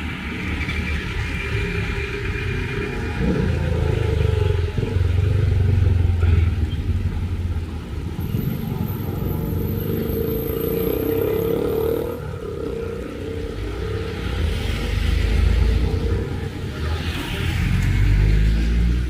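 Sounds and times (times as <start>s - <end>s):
rain: 0.0s - 19.0s
vehicle engine rumble: 0.0s - 19.0s
vehicle passing on wet road: 7.0s - 19.0s.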